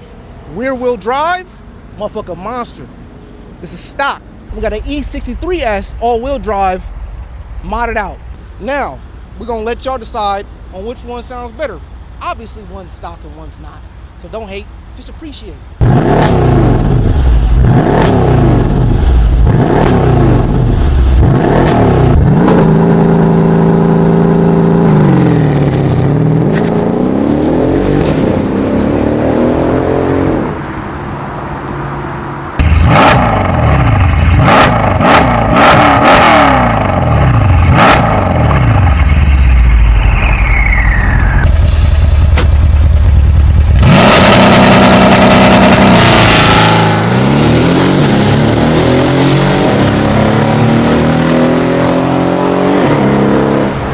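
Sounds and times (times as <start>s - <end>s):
exhaust cracks: 15.8s - 26.9s, 32.6s - 48.7s
car engine revving: 15.8s - 30.7s, 32.6s - 53.9s.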